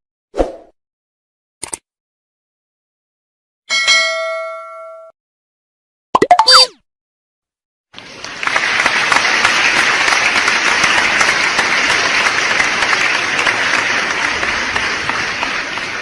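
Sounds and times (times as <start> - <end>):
large crowd clapping: 7.9 - 16.0.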